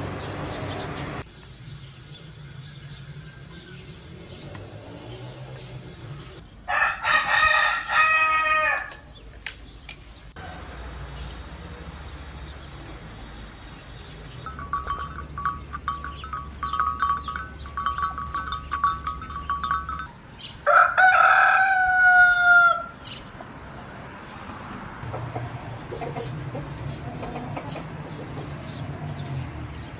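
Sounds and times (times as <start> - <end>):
rooster crowing: 6.7 - 9.1, 20.6 - 23.0
chickens clucking: 25.0 - 29.5.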